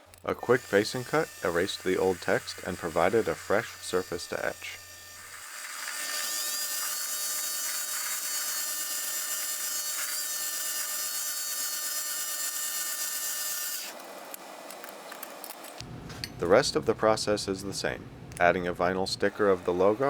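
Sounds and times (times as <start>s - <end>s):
lathe motor whining: 0.0s - 14.2s, 19.2s - 20.0s.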